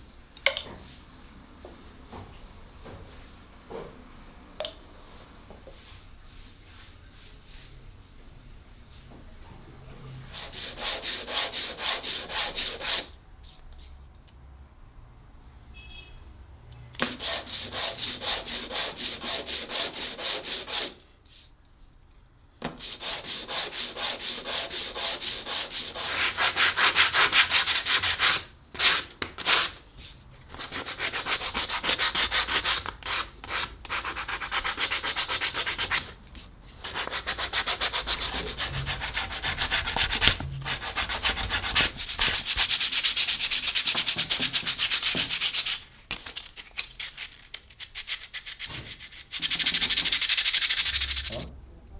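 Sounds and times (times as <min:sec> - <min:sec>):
sandpaper strokes on wood: 0:10.3 - 0:13.1, 0:17.0 - 0:21.0, 0:22.8 - 0:29.8, 0:36.8 - 0:45.8, 0:49.4 - 0:51.4.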